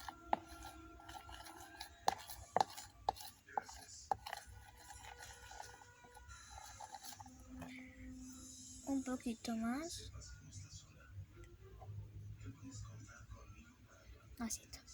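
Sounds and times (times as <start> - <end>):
spoon beating slime: 0.0 - 7.8.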